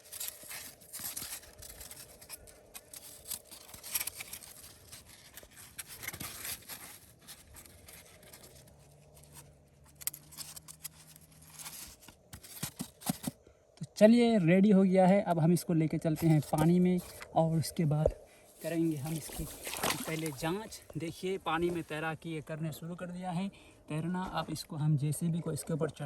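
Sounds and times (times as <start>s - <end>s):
faint rustling and scraping: 0.0s - 13.5s, 16.0s - 22.8s.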